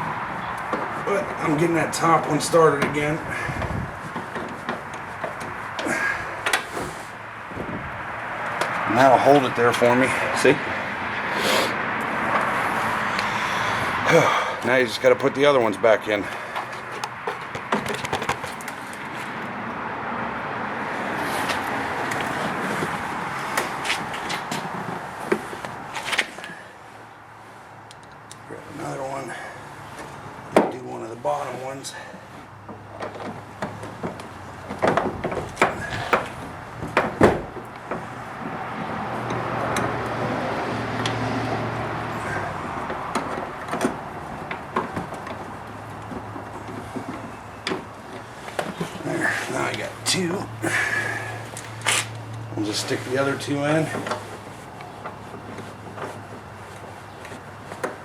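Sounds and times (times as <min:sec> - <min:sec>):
road vehicle passing: 0:00.0 - 0:58.0
rustling handling noise: 0:14.6 - 0:19.4, 0:42.4 - 0:58.0.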